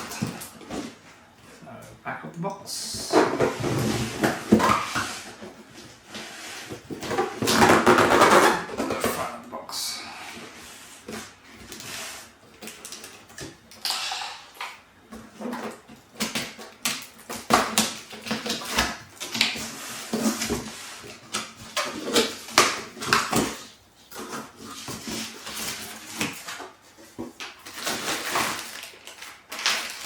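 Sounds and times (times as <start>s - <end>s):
cardboard and packaging rustling: 0.0s - 1.6s, 3.0s - 9.4s, 10.0s - 13.8s, 15.0s - 30.0s.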